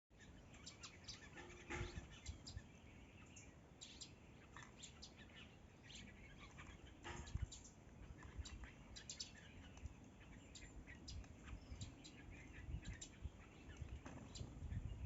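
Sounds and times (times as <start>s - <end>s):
small birds chirping: 0.1s - 15.0s.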